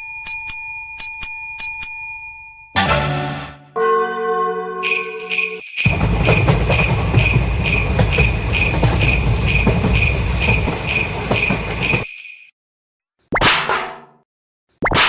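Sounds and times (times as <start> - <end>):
level crossing alarm bell: 0.0 - 12.5
heavy low rumble: 5.9 - 12.0.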